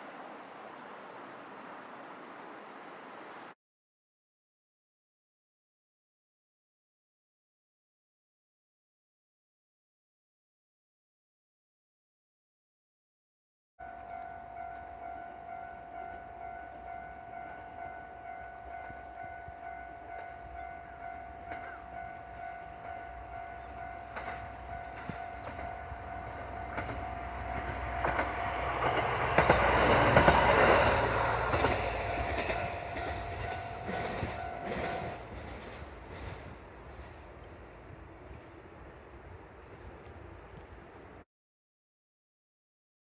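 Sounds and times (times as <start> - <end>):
diesel railcar passing: 0.0 - 3.6, 13.8 - 39.8
level crossing warning bell: 13.8 - 28.2, 31.9 - 35.3
train wheels clacking on rail joints: 16.0 - 37.5.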